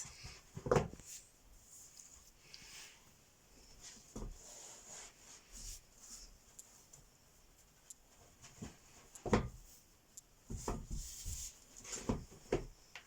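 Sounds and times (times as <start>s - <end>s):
broom sweeping a floor: 3.7s - 6.4s, 10.5s - 12.2s.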